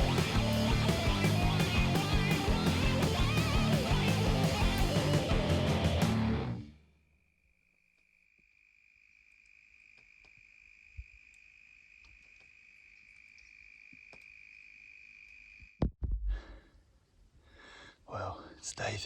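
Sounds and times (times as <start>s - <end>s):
insect trilling: 7.9s - 15.8s
faint ticks: 9.1s - 14.4s, 15.0s - 15.8s.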